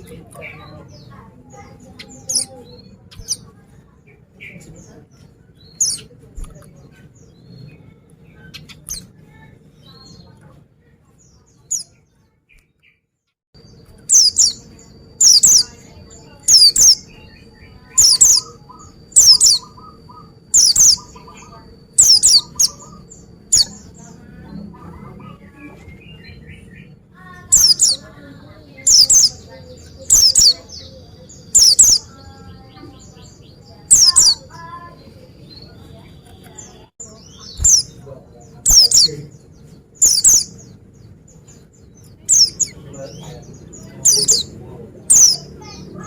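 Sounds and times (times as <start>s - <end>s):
bird chirping high: 0.0s - 6.2s, 6.8s - 10.4s, 11.2s - 13.0s, 13.6s - 46.0s.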